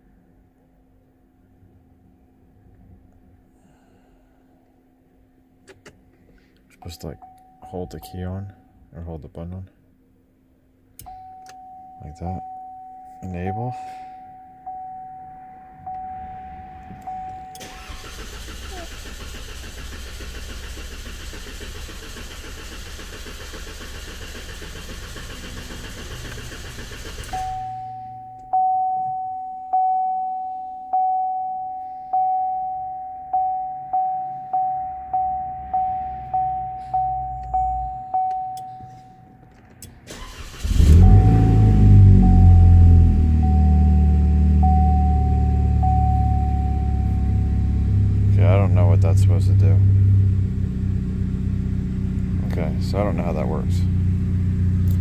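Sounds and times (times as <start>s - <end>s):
dashboard warning chime: 6.8s - 8.7s, 11.0s - 18.3s, 27.3s - 39.4s, 40.9s - 49.9s
engine cranking on starter: 17.5s - 27.6s, 39.8s - 42.5s.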